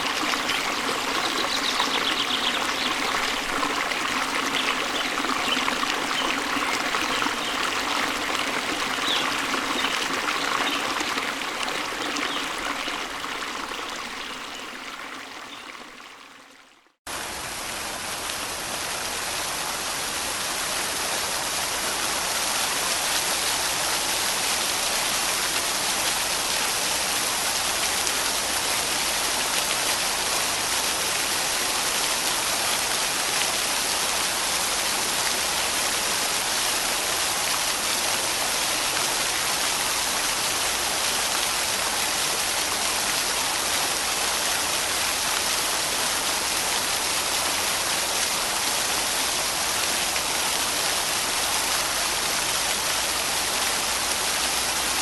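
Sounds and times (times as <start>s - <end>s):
waterfall rushing: 0.0s - 16.1s.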